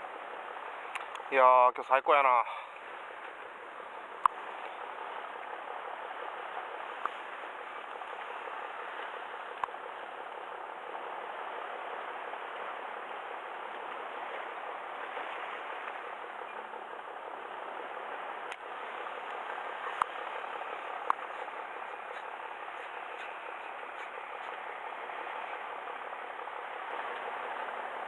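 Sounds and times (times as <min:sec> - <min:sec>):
water rushing at shoreline: 0:00.0 - 0:28.0
small sharp clicks: 0:00.9 - 0:01.3.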